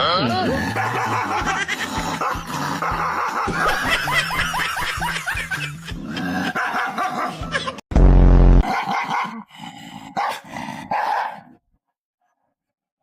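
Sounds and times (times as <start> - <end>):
background music: 0.0 - 7.7
dog barking and yipping: 0.8 - 5.4, 6.5 - 7.6, 8.6 - 9.4, 10.2 - 11.5.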